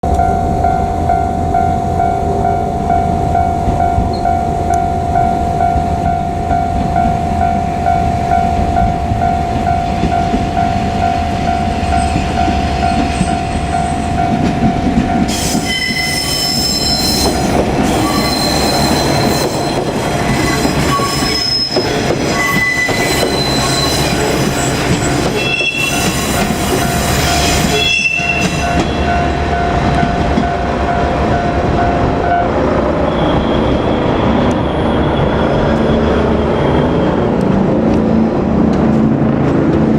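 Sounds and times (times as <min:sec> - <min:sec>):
level crossing warning bell: 0:00.0 - 0:37.4
diesel railcar engines running: 0:00.0 - 0:39.9
train wheels squealing on rails: 0:09.8 - 0:29.4, 0:32.8 - 0:37.8.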